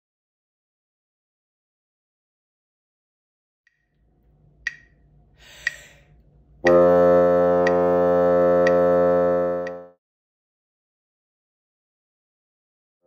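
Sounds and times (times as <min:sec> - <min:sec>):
metronome clicking: 0:04.7 - 0:06.0, 0:06.6 - 0:10.0
bassoon low note: 0:06.6 - 0:10.0.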